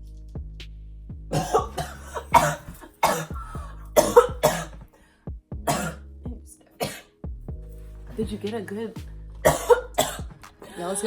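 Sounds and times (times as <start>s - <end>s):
person coughing: 1.3s - 4.8s, 5.7s - 6.0s, 6.8s - 7.1s, 9.5s - 10.3s.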